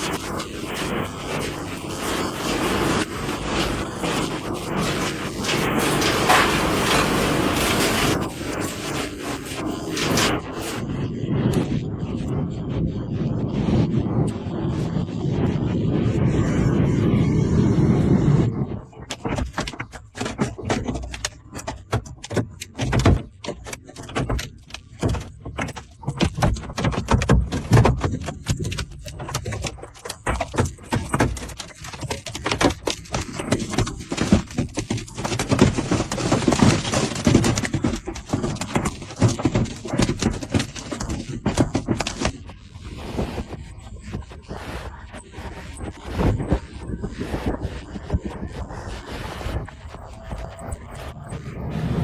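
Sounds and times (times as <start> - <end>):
hailstones pelting hard surfaces: 1.4 - 9.2, 30.5 - 42.3.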